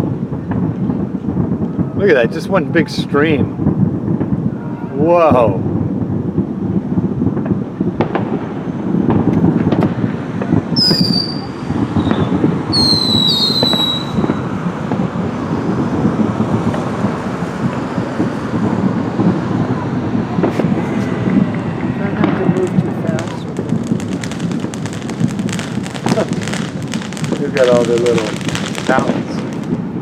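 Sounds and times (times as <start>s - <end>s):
fireworks crackling and booming: 0.0s - 30.0s
whistling fireworks shrieking: 0.0s - 30.0s.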